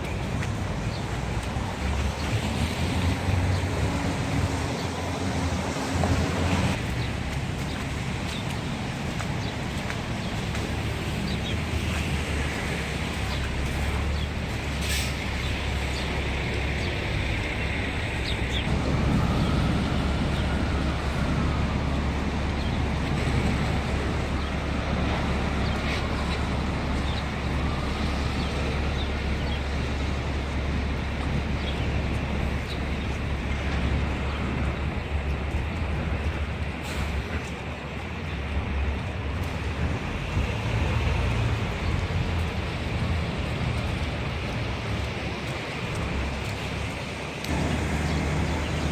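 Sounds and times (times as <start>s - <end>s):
rumble of passing vehicles: 0.0s - 48.9s.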